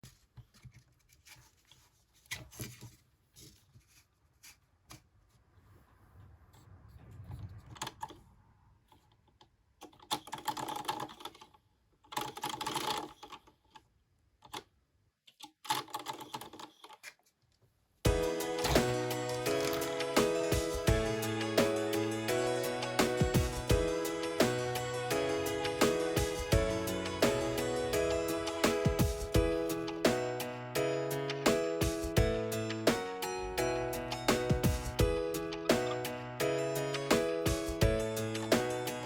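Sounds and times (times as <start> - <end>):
music: 18.1 - 39.0.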